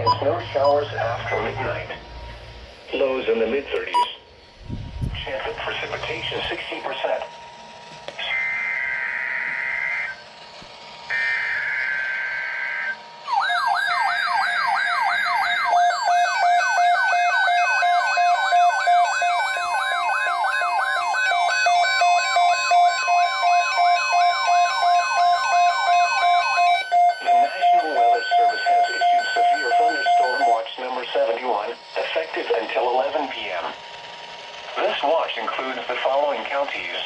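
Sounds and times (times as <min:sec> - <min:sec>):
repeating beeps: 0:00.0 - 0:01.8, 0:03.9 - 0:04.2, 0:17.8 - 0:30.7
steady tone: 0:00.0 - 0:10.4
screechy digital data bursts: 0:08.2 - 0:10.3, 0:11.1 - 0:35.9
siren-like alert wail: 0:08.2 - 0:10.4, 0:11.0 - 0:30.9.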